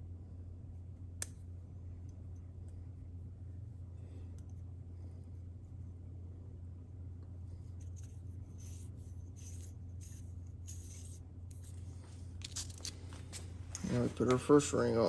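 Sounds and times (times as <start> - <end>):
steady low hum: 0.0 - 15.0
soft metallic scrapes: 7.5 - 14.2.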